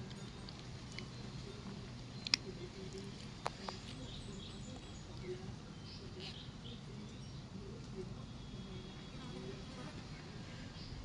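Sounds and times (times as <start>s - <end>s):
person chewing food: 0.0s - 1.2s.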